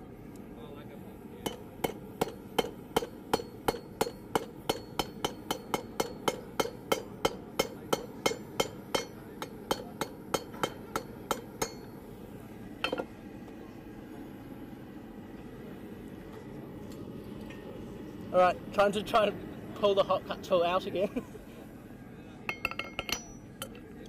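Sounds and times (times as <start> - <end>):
hammer striking steel on anvil: 1.4 - 12.0, 22.5 - 23.8.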